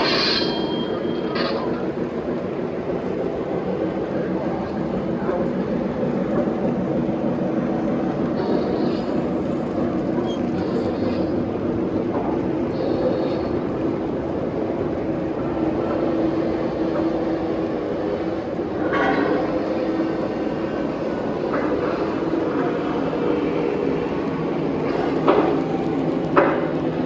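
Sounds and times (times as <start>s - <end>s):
high-pitched squeals: 0.0s - 2.1s
model trains rumbling on track: 0.0s - 27.0s.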